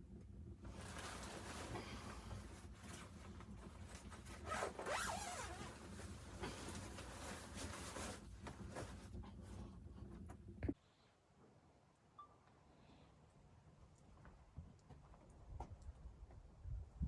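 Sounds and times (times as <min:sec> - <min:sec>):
fabric rustling: 0:00.6 - 0:09.8
zipper being pulled: 0:04.2 - 0:06.2.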